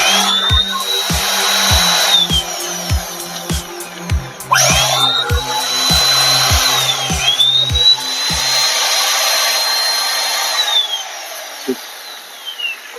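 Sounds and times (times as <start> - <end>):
background music with steady beat: 0.0 - 9.9.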